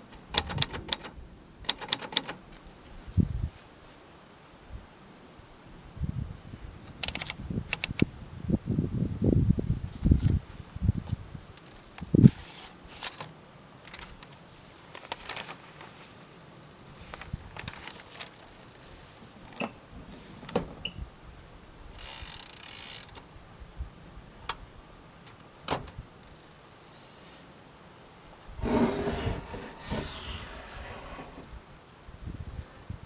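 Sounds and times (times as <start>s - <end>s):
typewriter clicks and clacks: 0.3s - 1.1s, 1.7s - 2.4s
typewriter rasping slide: 28.6s - 31.5s.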